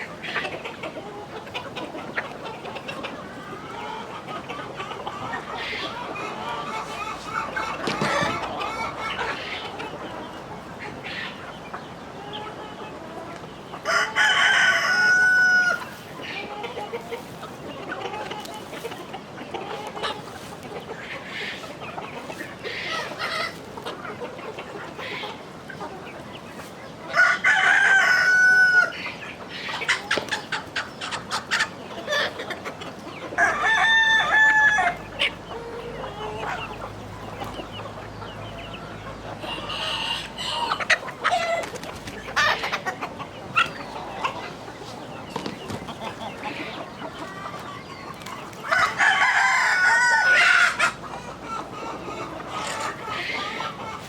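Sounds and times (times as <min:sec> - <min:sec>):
chickens clucking: 0:00.0 - 0:54.0
rooster crowing: 0:13.9 - 0:15.8, 0:27.1 - 0:29.0, 0:33.4 - 0:35.0, 0:48.7 - 0:50.6.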